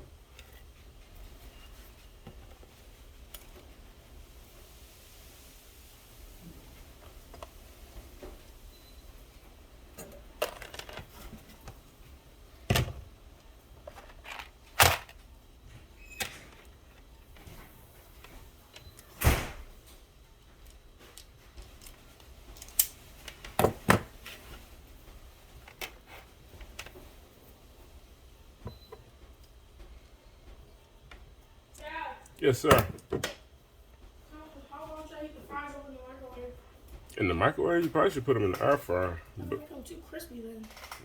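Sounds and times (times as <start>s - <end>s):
objects being handled and set down: 9.9s - 11.8s, 12.6s - 19.1s, 20.6s - 27.2s, 32.6s - 33.4s.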